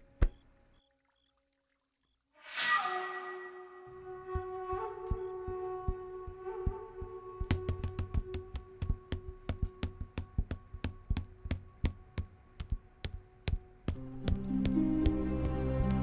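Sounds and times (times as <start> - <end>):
sharp taps and knocks: 5.9 - 16.0.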